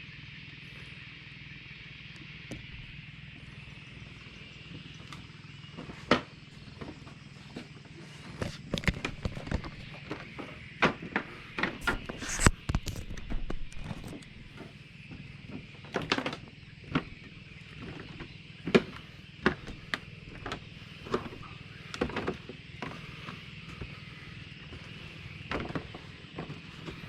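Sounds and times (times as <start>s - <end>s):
bicycle tyres rolling on road: 0.0s - 27.0s
sharp clicks and knocks: 8.3s - 23.9s.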